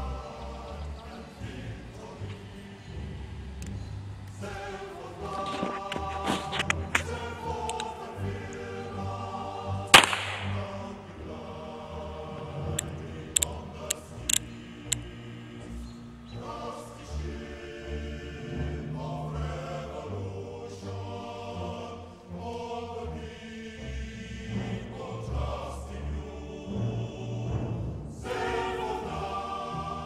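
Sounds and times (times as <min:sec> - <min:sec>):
choir singing: 0:00.0 - 0:30.0
sharp cracks: 0:09.9 - 0:10.9.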